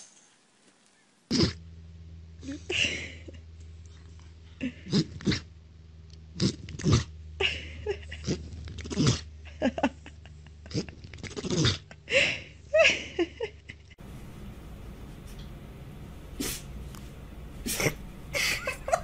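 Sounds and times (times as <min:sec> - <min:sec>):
steady low hum: 0:01.0 - 0:19.0
pet sneezing and snorting: 0:16.3 - 0:16.8, 0:17.6 - 0:18.5.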